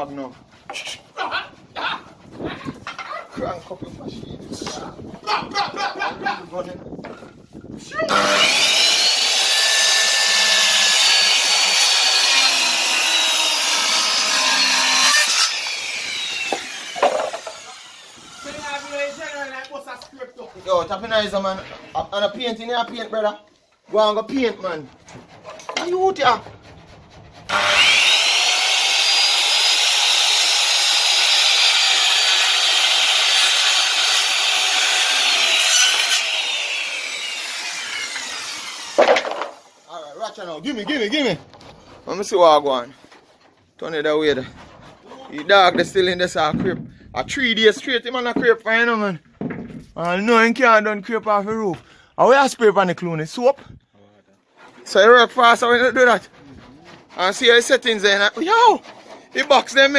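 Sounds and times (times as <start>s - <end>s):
saw blade spinning down: 8.1s - 19.4s, 27.5s - 39.9s
power saw cutting plywood: 8.1s - 19.6s, 25.0s - 40.3s.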